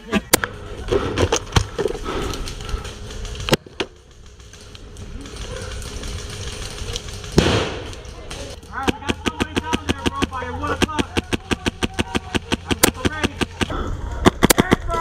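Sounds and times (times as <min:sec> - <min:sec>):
rustling and clatter: 0:00.6 - 0:13.7
sharp clicks: 0:05.8 - 0:14.9.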